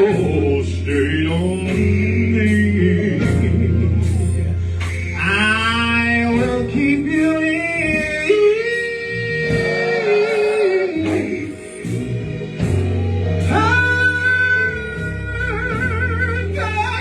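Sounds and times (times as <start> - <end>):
band with steady beat: 0.0 - 17.0
lead singer holding long notes: 0.0 - 17.0
gospel choir singing: 4.9 - 17.0.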